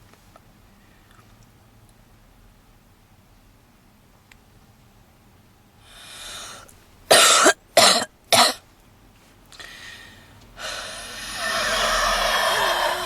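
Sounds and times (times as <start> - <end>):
loud wheezing breath: 5.8 - 6.7, 9.6 - 13.0
woman breathing: 5.8 - 6.8, 9.6 - 13.0
woman coughing: 7.1 - 8.6.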